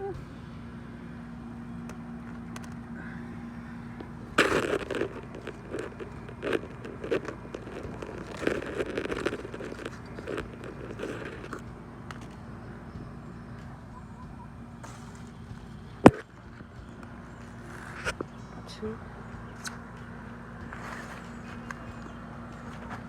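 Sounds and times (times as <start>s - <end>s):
plant leaves and stems crunching: 3.8s - 12.5s, 20.7s - 23.0s.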